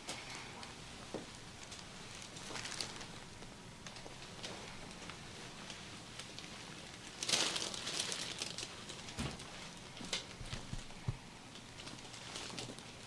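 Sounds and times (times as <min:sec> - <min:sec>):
rustling: 0:00.0 - 0:13.0
soft low thumps: 0:10.4 - 0:11.3.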